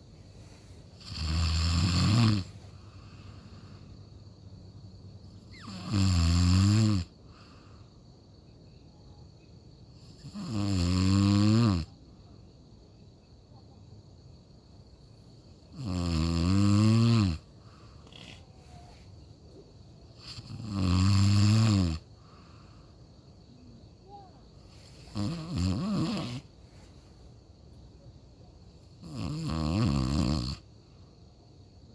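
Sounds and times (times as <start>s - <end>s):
quiet breathing: 0.0s - 1.2s, 2.4s - 5.6s, 7.1s - 8.8s, 17.4s - 20.5s, 22.1s - 25.3s, 26.1s - 28.2s
loud snoring: 1.0s - 2.6s, 5.5s - 7.1s, 10.0s - 11.9s, 15.7s - 18.5s, 20.2s - 22.1s, 25.0s - 26.5s, 29.0s - 30.6s.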